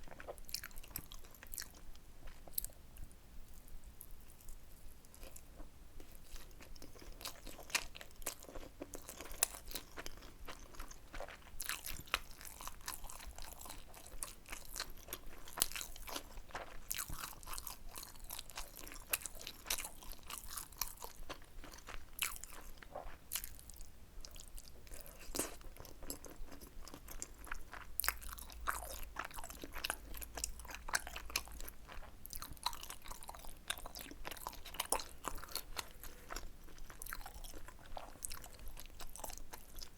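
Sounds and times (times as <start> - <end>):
person chewing wet crunchy food: 0.0 - 39.9.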